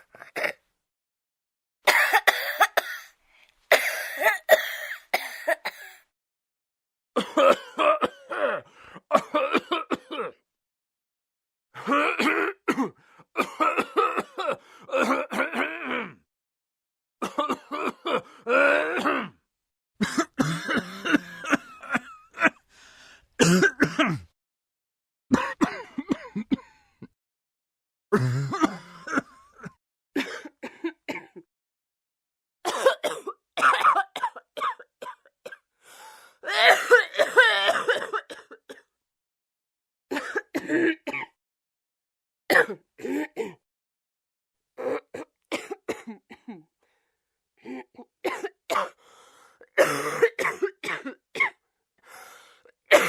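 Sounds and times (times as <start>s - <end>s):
person coughing: 1.9s - 3.1s, 3.7s - 6.1s, 7.2s - 10.4s, 11.8s - 16.2s, 17.2s - 19.4s, 20.0s - 22.6s, 23.4s - 24.4s, 25.3s - 27.2s, 28.1s - 31.5s, 32.7s - 35.6s, 36.4s - 38.9s, 40.1s - 41.4s, 42.5s - 43.6s, 44.8s - 46.7s, 47.6s - 49.0s, 49.6s - 51.6s
person clearing throat: 17.2s - 19.4s, 20.0s - 22.2s, 23.4s - 24.4s, 28.1s - 31.4s, 32.7s - 35.6s, 36.5s - 38.9s, 42.5s - 43.6s, 44.8s - 46.7s, 49.7s - 51.6s.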